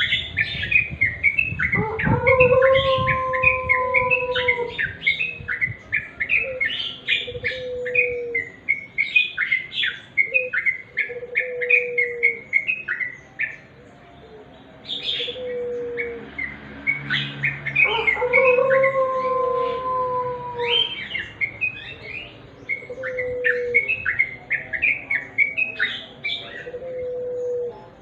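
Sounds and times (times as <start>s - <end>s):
bulbuls chirping: 0.0s - 28.0s.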